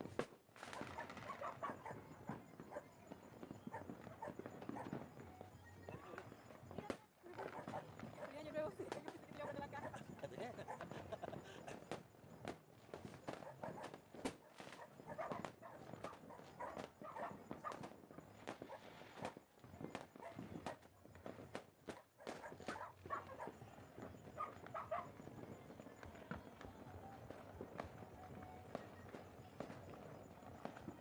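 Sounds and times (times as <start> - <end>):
distant fireworks popping: 0.0 - 31.0.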